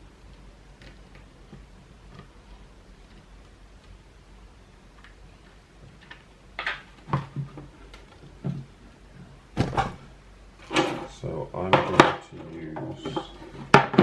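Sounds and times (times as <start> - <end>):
faint ticking: 0.0 - 6.5.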